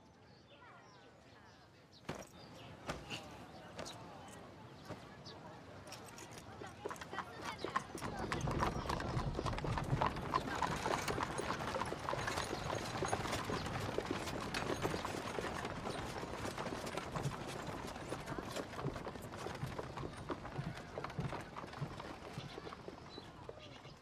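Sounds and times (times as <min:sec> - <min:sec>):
horse hooves clip-clopping: 0:02.1 - 0:24.0
carriage rattling and creaking: 0:05.9 - 0:23.2.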